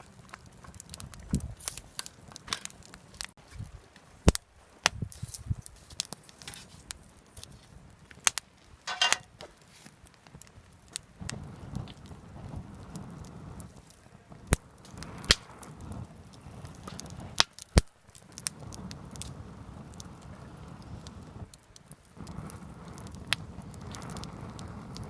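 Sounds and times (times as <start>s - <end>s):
crinkling rustles: 0.0s - 11.2s.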